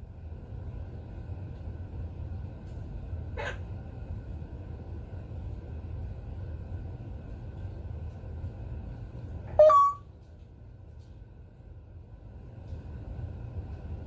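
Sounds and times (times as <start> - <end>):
steady low hum: 0.0 - 14.0
parrot calling: 3.4 - 3.7.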